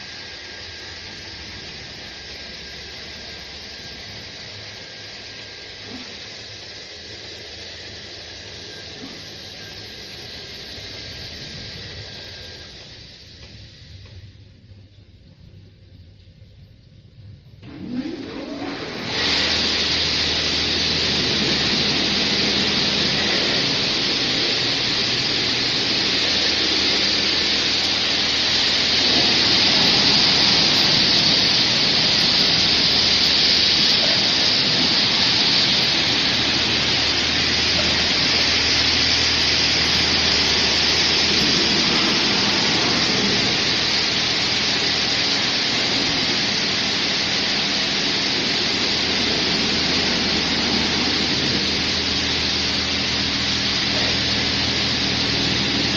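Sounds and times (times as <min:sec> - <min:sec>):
high-pressure water jets hissing: 0:00.0 - 0:14.1, 0:18.0 - 0:55.9
low pump hum: 0:00.0 - 0:55.9.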